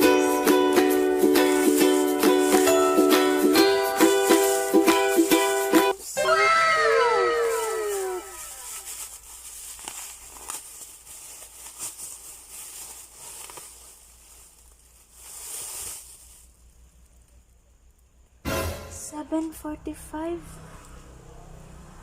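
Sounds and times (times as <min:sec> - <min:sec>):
wrapping paper tearing and crinkling: 0:01.4 - 0:03.4, 0:04.0 - 0:06.0, 0:07.0 - 0:17.0.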